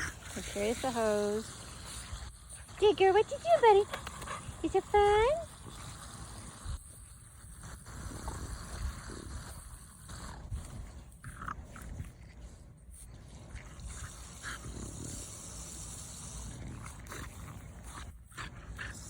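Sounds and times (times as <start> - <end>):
dog sounds: 0.0 - 6.6
running water from hose: 0.0 - 19.0.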